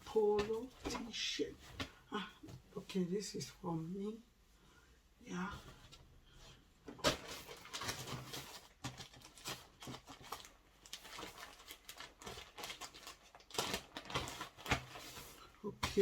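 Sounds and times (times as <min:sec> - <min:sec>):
plastic packaging crinkling: 0:07.0 - 0:16.0.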